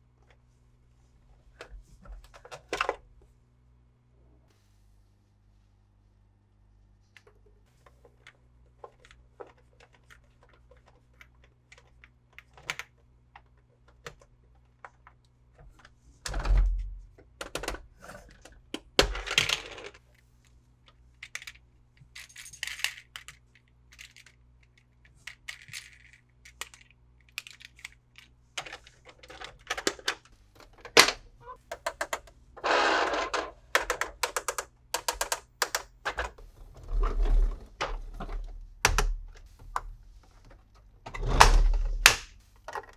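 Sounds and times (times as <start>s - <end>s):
hard plastic parts clicking: 25.2s - 42.9s.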